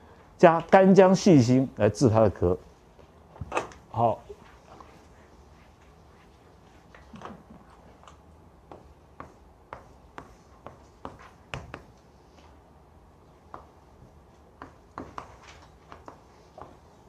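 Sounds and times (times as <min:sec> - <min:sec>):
writing taps and scratches: 0:05.6 - 0:12.6, 0:13.2 - 0:17.0.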